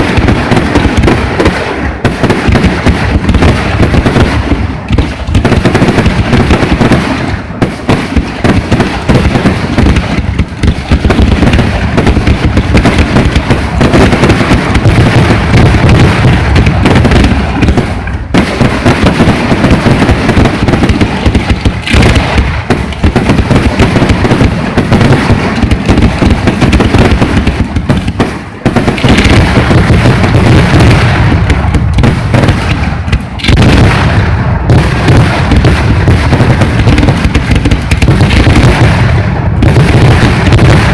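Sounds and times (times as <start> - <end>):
fireworks exploding: 0.0 - 40.9.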